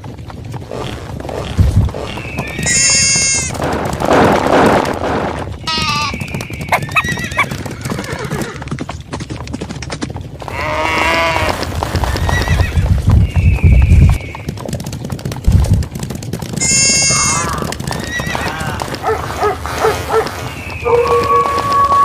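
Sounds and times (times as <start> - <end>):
hooves clattering: 0.0 - 22.0
animal calls: 0.6 - 3.7, 5.6 - 8.7, 16.6 - 22.0
low rumble: 0.6 - 6.1.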